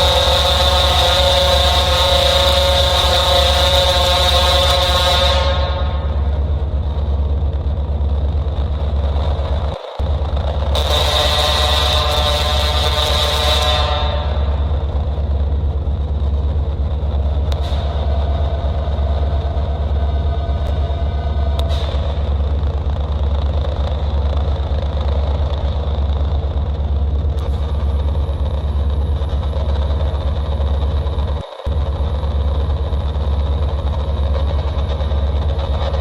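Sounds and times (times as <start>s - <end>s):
deep synthesized drone: 0.0s - 36.0s
thin high whine: 8.9s - 36.0s.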